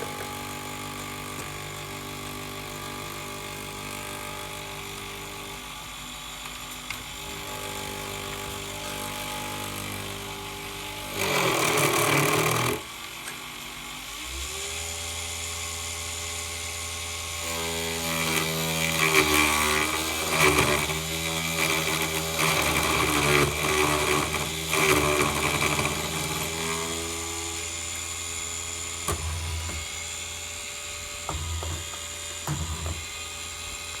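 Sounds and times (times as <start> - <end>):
milling machine motor humming: 18.3 - 34.0.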